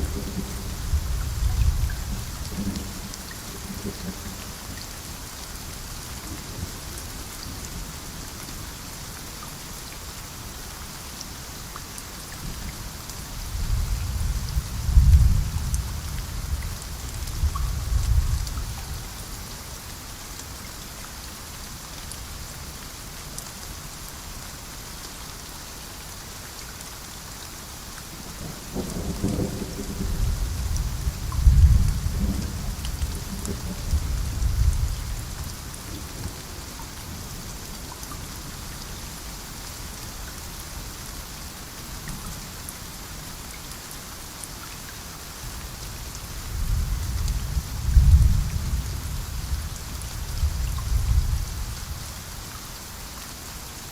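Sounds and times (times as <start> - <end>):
thunder rumbling: 0.0 - 4.4, 28.8 - 35.4, 46.6 - 49.6
steady rain falling: 0.0 - 53.9.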